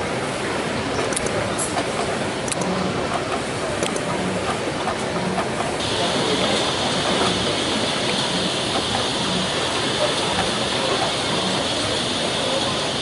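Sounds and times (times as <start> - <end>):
pulsing machinery noise: 0.0 - 13.0.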